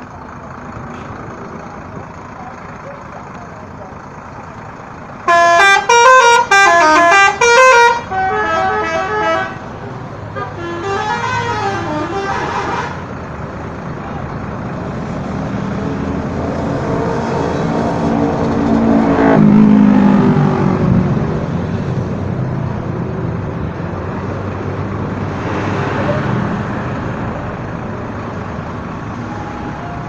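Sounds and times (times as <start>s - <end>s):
bus engine running: 0.0s - 30.0s
musical bus horn: 5.2s - 13.1s, 16.7s - 18.5s.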